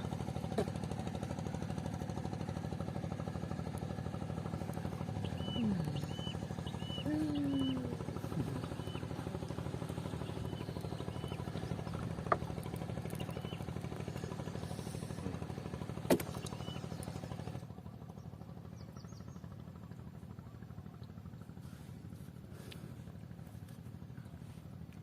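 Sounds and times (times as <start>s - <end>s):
small engine running: 0.0s - 25.0s.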